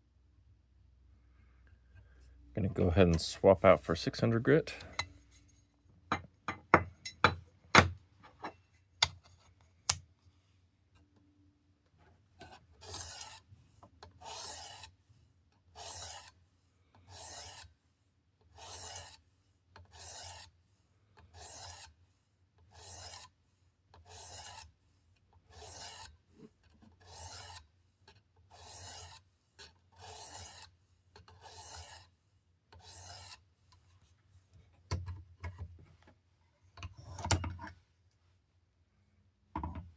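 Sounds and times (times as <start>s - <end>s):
sharpening stone rasping on blade: 12.8s - 13.4s, 14.2s - 14.9s, 15.8s - 16.3s, 17.1s - 17.7s, 18.6s - 19.2s, 19.9s - 20.5s, 21.4s - 21.9s, 22.7s - 23.4s, 24.1s - 24.7s, 25.5s - 26.1s, 27.0s - 27.6s, 28.5s - 29.2s, 30.0s - 30.7s, 31.4s - 32.1s, 32.8s - 33.4s.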